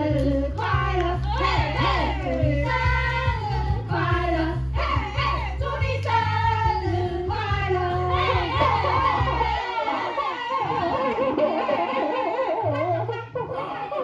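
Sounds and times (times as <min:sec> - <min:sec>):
backing music: 0:00.0 - 0:09.8
group singing together: 0:00.0 - 0:12.6.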